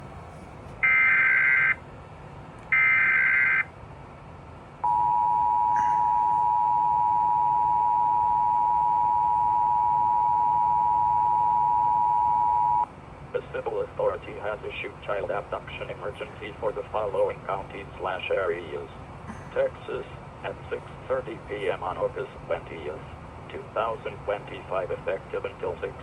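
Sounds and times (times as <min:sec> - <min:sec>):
two-tone attention signal: 0:00.8 - 0:01.8, 0:04.8 - 0:12.9
digital data tone bursts: 0:04.9 - 0:12.8.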